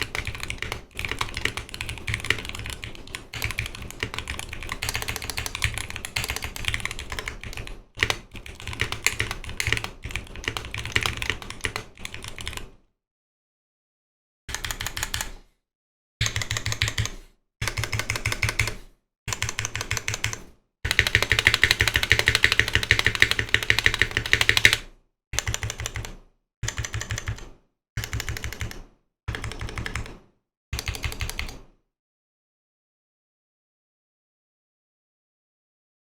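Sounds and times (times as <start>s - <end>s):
mechanical keyboard typing: 0.0s - 12.7s, 14.5s - 15.4s, 16.2s - 30.2s, 30.8s - 31.6s.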